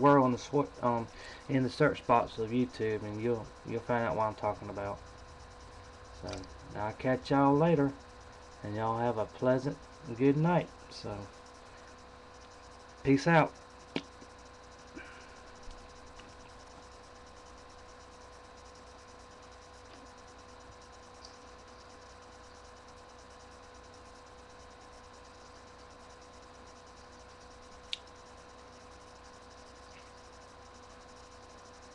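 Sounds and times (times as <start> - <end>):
room tone hum and hiss: 0.0 - 31.9
sharp click: 13.9 - 14.2.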